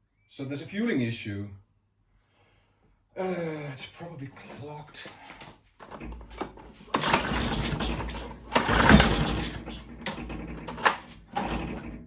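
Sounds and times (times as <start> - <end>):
pull cord cranking: 5.8 - 12.0
lawn mower engine running raggedly: 5.9 - 12.0.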